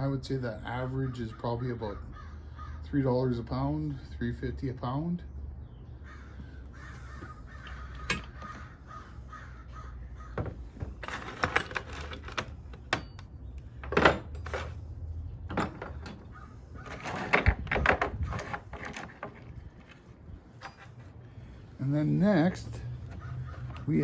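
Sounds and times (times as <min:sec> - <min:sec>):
scrap metal pieces clinking: 0:10.8 - 0:13.2.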